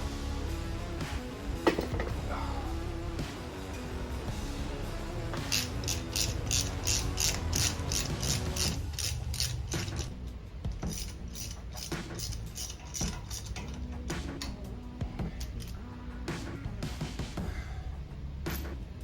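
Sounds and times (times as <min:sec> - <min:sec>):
ratchet wrench clicking: 0:05.4 - 0:14.6, 0:15.4 - 0:15.8.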